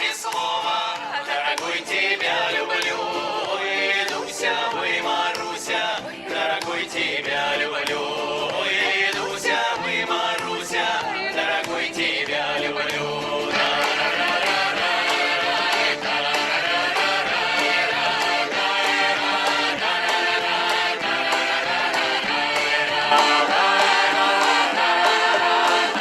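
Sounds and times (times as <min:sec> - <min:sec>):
choir singing a folk song: 0:00.0 - 0:26.0.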